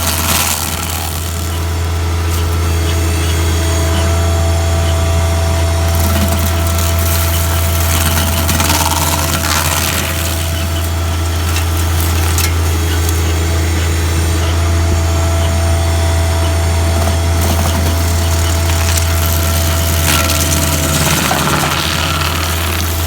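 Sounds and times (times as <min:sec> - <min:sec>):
engine running steadily: 0:00.0 - 0:23.0.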